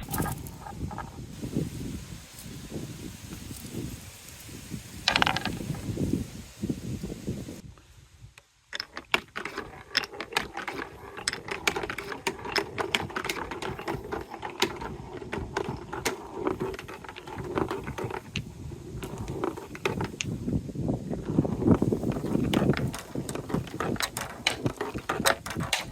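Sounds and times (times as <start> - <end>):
marbles clicking: 5.0 - 5.8, 8.7 - 20.4, 21.3 - 25.9
marbles rolling on plastic track: 5.0 - 5.8, 8.8 - 20.4, 21.2 - 25.9.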